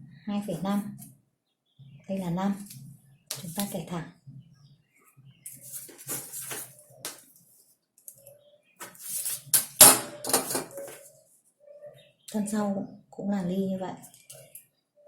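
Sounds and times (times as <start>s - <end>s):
marking tool scratching along ruler: 8.8s - 9.6s.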